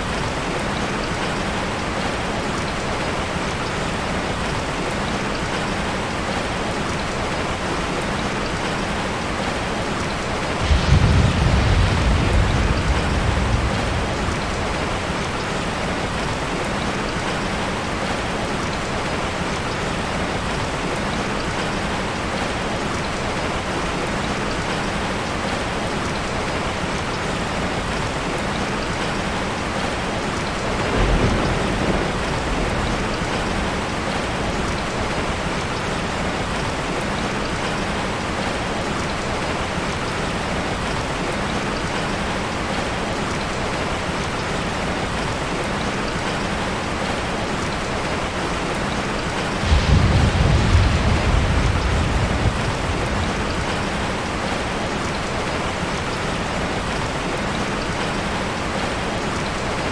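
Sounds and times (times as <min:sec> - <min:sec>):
steady rain falling: 0:00.0 - 0:59.9
thunder rumbling: 0:10.6 - 0:16.6, 0:30.5 - 0:35.4, 0:49.6 - 0:55.8.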